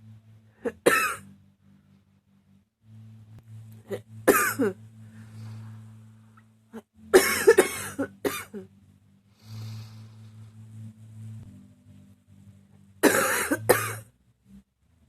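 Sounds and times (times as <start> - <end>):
woman coughing: 0.6 - 1.3, 4.3 - 4.8, 7.1 - 8.7, 13.0 - 14.0
drawn breath: 5.0 - 6.2, 9.3 - 10.7.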